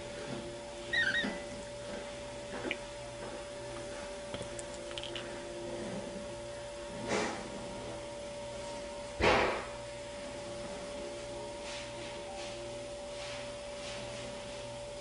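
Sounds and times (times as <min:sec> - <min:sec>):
electrical hum: 0:00.0 - 0:15.0
kitten squeaking: 0:00.9 - 0:01.5.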